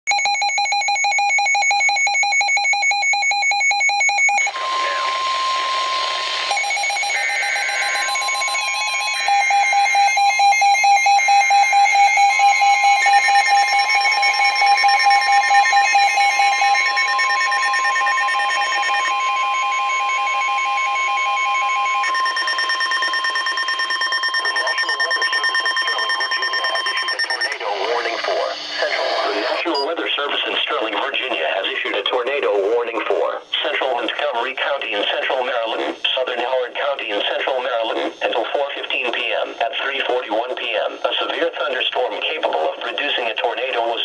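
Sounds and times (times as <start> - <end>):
high warning alarm tone: 0.1 - 32.5
buzzy digital header bursts: 4.5 - 11.0.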